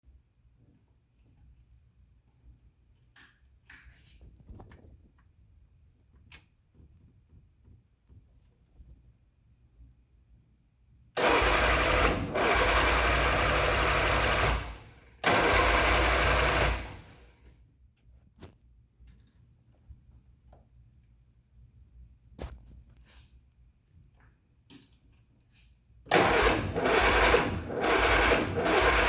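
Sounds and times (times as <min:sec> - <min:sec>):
engine cranking by starter motor: 0:11.2 - 0:17.4, 0:26.1 - 0:29.0.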